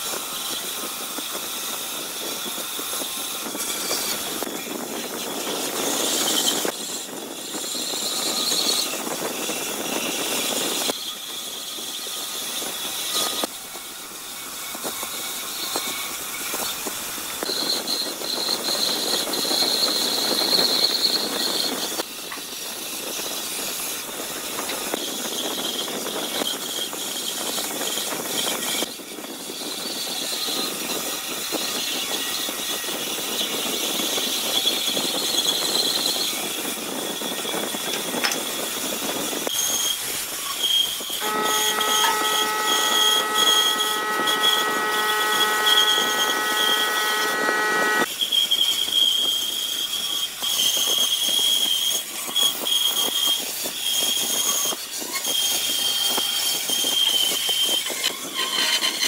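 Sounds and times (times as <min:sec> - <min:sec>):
woodworking power tools whining: 0:05.7 - 0:20.9, 0:39.6 - 0:48.1.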